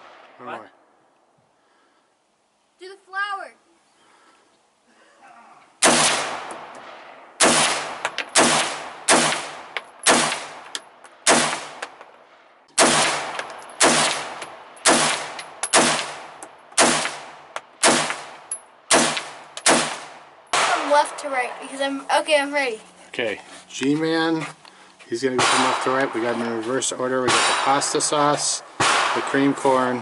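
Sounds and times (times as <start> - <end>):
rifle shots echoing: 5.8 - 12.0, 12.8 - 21.7, 25.3 - 30.0.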